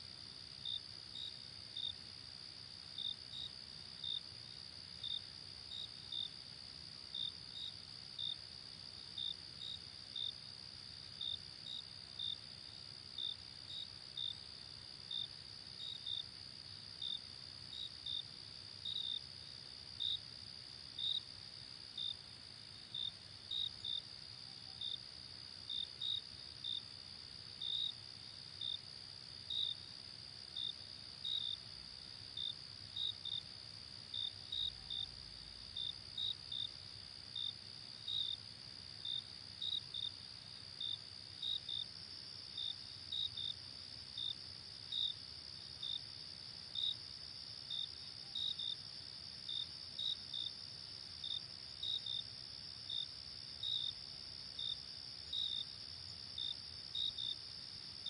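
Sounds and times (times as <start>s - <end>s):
cricket chirps: 0.0s - 58.0s.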